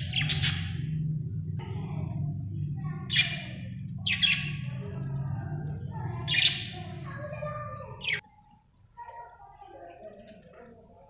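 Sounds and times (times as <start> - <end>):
budgerigar chirping and warbling: 0.0 - 1.1, 2.8 - 4.8
low hum: 0.0 - 8.0.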